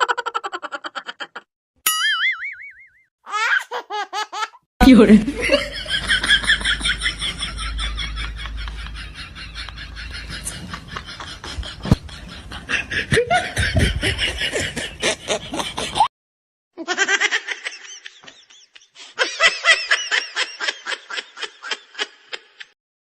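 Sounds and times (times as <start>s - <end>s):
people laughing: 4.9s - 16.0s, 16.8s - 22.8s.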